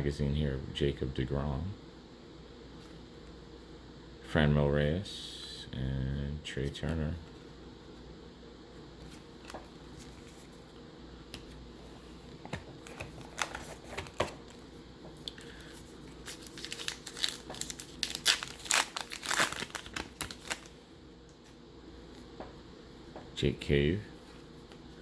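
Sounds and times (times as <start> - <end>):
wrapper crinkling: 15.3 - 20.8.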